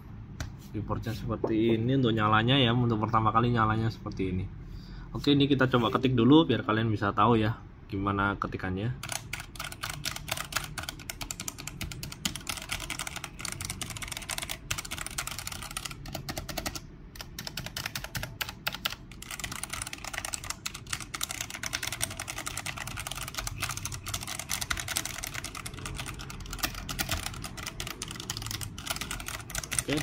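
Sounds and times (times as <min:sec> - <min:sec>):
mechanical keyboard typing: 0:09.0 - 0:30.0.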